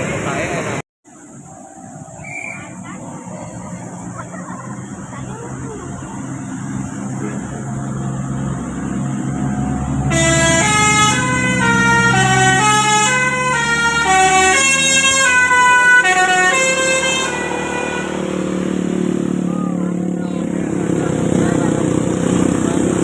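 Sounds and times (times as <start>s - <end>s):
bus diesel engine running: 0.0s - 23.0s
musical horn playing a tune: 10.0s - 18.8s.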